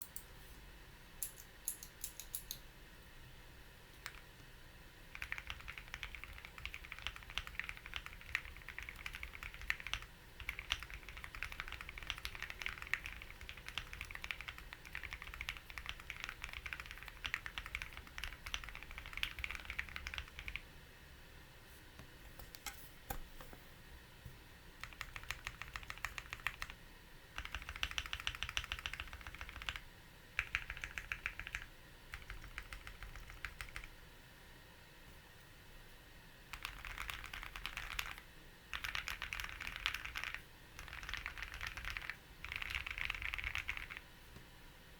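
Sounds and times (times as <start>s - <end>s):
mechanical keyboard typing: 4.0s - 4.3s, 5.1s - 20.6s, 24.8s - 26.8s, 27.4s - 29.8s, 30.4s - 33.9s, 36.5s - 44.0s.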